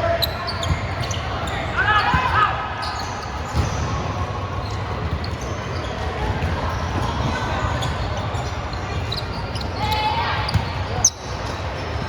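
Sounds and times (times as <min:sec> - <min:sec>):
din of sports hall: 0:00.0 - 0:12.0
volleyball bouncing on gym floor: 0:10.4 - 0:11.0.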